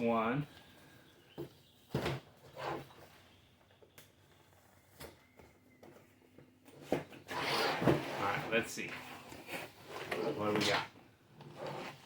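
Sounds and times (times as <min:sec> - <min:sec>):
cardboard rustling and scraping: 0:06.6 - 0:12.0.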